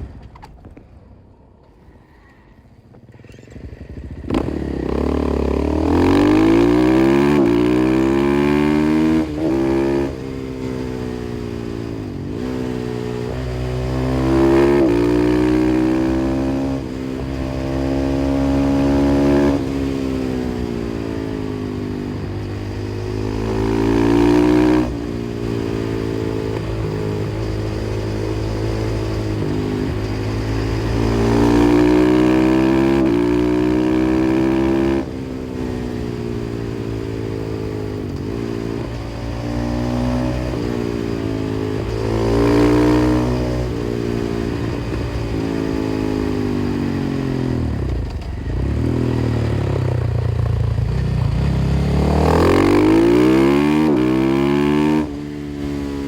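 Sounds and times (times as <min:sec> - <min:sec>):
motorcycle engine accelerating: 0:02.7 - 0:56.0.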